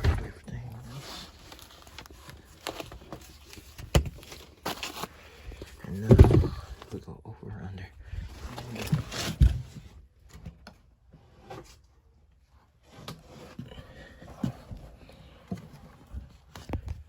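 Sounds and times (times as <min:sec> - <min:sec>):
thumps and knocks: 0:00.0 - 0:00.4, 0:06.0 - 0:06.8.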